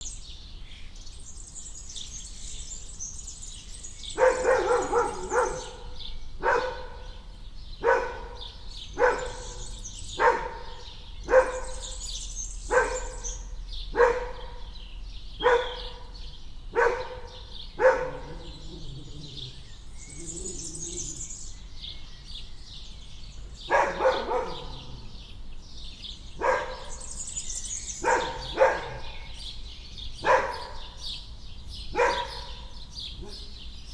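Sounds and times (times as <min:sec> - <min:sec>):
birds chirping: 0:00.0 - 0:33.9
dog barking: 0:04.1 - 0:12.1, 0:12.7 - 0:14.8, 0:15.4 - 0:19.5, 0:23.7 - 0:25.2, 0:26.4 - 0:27.1, 0:28.0 - 0:29.4, 0:30.2 - 0:31.0, 0:31.9 - 0:33.5.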